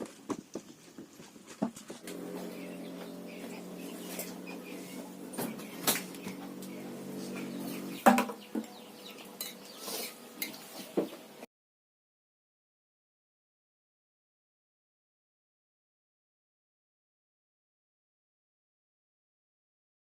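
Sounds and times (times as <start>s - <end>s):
steady low hum: 2.0s - 10.5s
utensils clattering against dishes: 2.0s - 10.9s.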